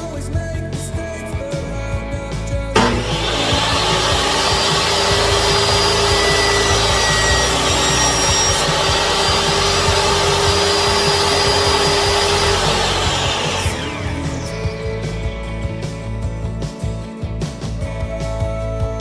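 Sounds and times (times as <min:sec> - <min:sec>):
table saw cutting wood: 0:02.8 - 0:15.2.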